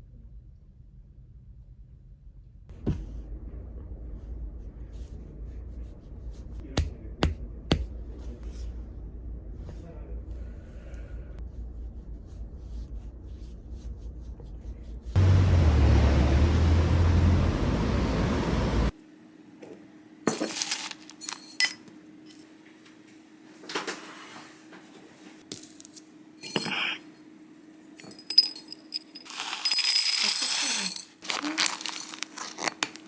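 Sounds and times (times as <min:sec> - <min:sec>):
low hum: 0:00.0 - 0:19.0
loud rush of noise: 0:15.2 - 0:18.9
glass and dishes clinking: 0:26.4 - 0:27.0.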